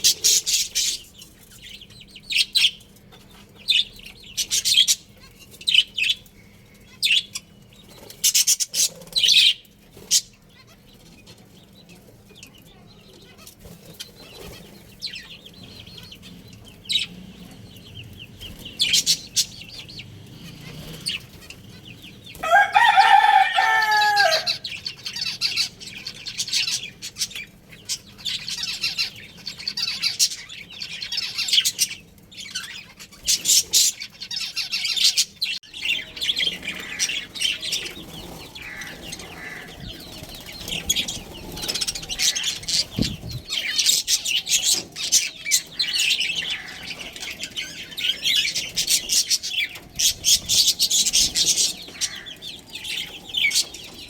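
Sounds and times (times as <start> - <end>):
budgerigars chirping: 0.0 - 12.4, 13.2 - 54.0
rooster crowing: 22.4 - 24.7.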